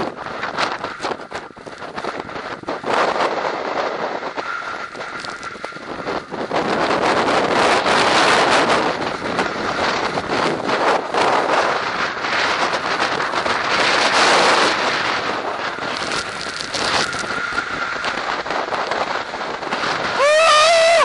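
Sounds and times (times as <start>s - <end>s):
wind buffeting microphone: 0.0s - 21.0s
person shouting: 20.2s - 21.0s.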